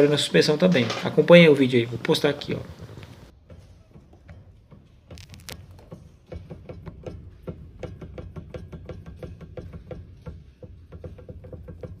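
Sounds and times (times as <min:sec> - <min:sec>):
suspension component knocking: 0:03.3 - 0:12.0.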